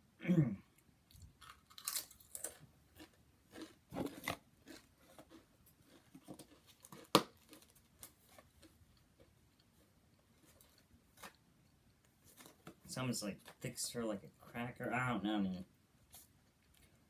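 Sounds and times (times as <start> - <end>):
person crunching chips: 1.3 - 8.8.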